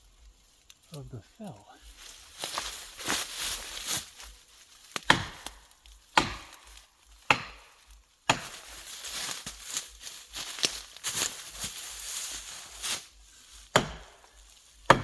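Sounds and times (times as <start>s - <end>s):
axe strikes on tree wood: 4.8s - 9.6s, 13.6s - 15.0s.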